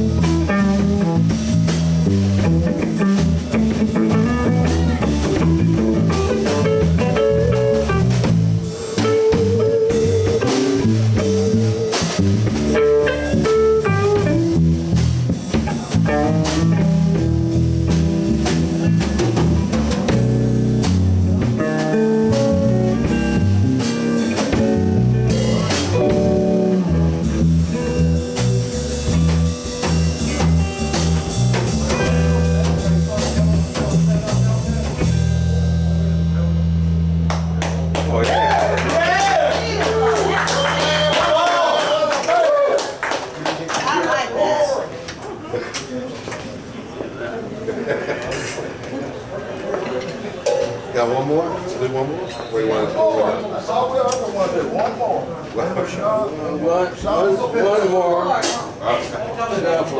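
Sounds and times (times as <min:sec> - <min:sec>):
guitar lines: 0:00.0 - 0:41.4
bass guitar: 0:00.0 - 0:41.8
drum kit: 0:00.0 - 0:42.6
blues band playing: 0:00.0 - 0:43.3.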